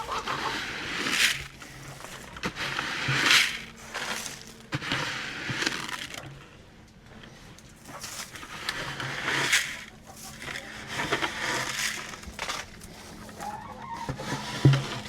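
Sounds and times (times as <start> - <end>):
grain being scooped and scattered: 0.0 - 6.2, 7.8 - 13.4.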